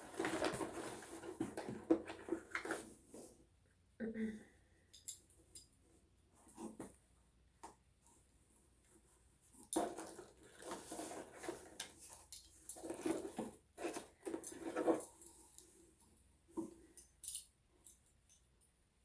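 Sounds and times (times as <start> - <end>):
packaging rustling: 0.0 - 2.9.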